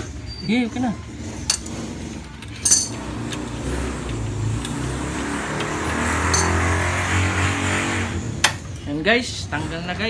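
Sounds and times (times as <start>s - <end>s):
vehicle engine running: 0.9s - 8.8s.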